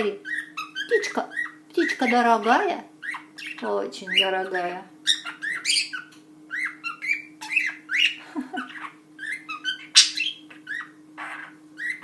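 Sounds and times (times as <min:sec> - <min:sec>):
budgerigar chattering: 0:00.2 - 0:12.0.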